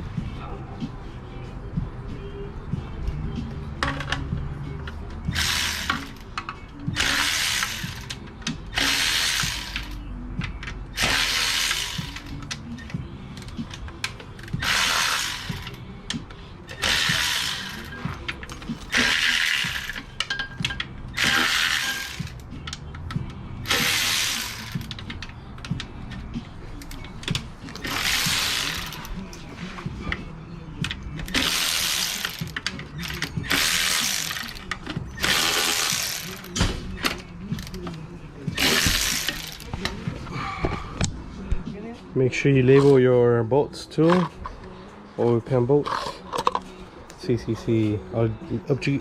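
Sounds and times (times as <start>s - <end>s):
ratchet wrench clicking: 5.3s - 26.2s, 26.8s - 29.2s, 30.8s - 38.0s, 38.6s - 39.7s.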